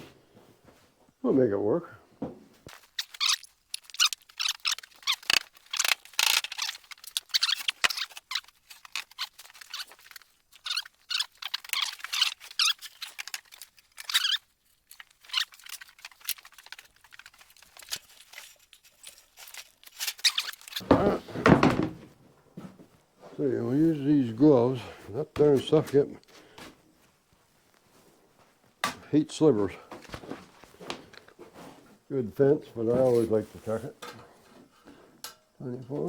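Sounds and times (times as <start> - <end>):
material squeaking and rustling: 2.6 - 22.2.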